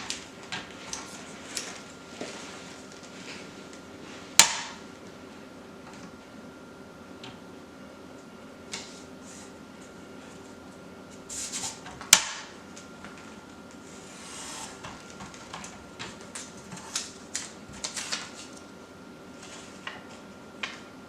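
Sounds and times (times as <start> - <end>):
blade scraping on paper: 13.8 - 14.9.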